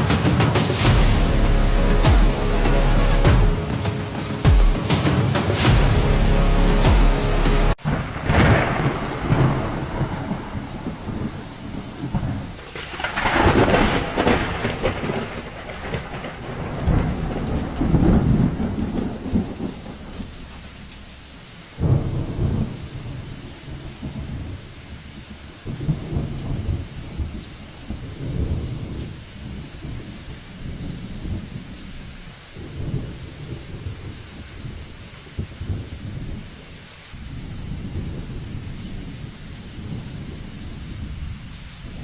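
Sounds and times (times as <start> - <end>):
low rumbling surges: 0.0 - 21.3
rain: 0.0 - 42.0.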